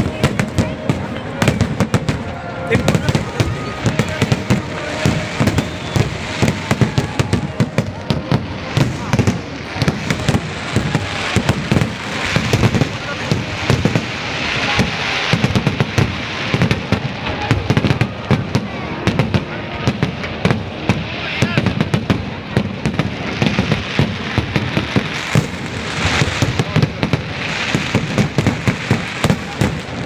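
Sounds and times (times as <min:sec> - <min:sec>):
fireworks bangs and crackles: 0:00.0 - 0:30.0
hissing crackle: 0:00.0 - 0:30.0.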